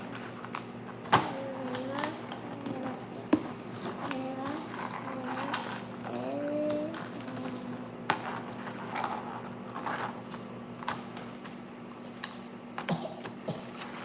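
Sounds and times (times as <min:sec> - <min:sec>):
plastic toys clicking and scraping: 0:00.0 - 0:03.0, 0:03.8 - 0:11.1
faint steady hum: 0:00.0 - 0:14.0.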